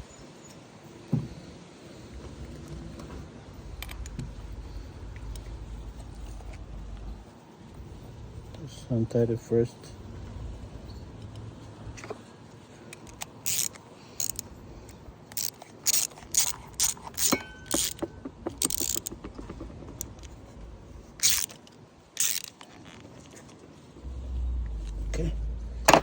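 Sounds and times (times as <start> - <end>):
metal parts clicking: 12.9 - 20.4, 21.2 - 23.0
tools scraping metal parts: 12.9 - 20.4, 21.2 - 22.8.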